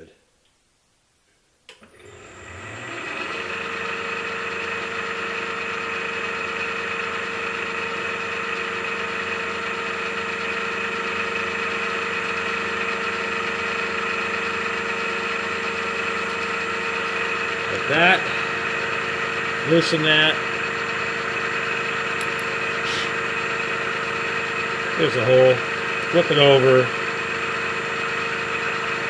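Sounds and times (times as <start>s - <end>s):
spindle motor whining: 1.8s - 29.0s.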